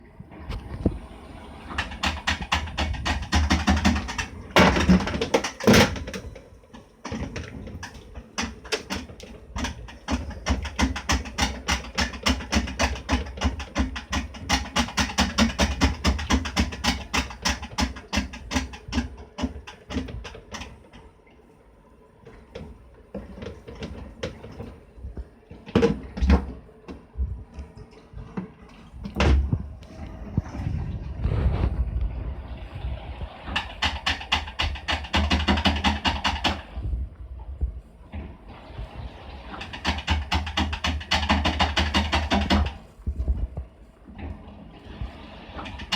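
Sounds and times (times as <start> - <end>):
washing machine rattling: 0.3 - 27.2, 27.8 - 37.0, 38.1 - 45.9.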